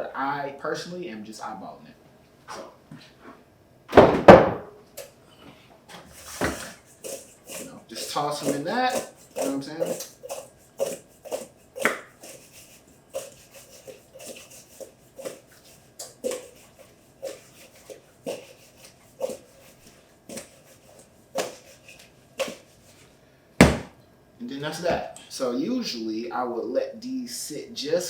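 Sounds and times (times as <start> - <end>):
fruit tossed in a bowl: 6.1 - 23.0.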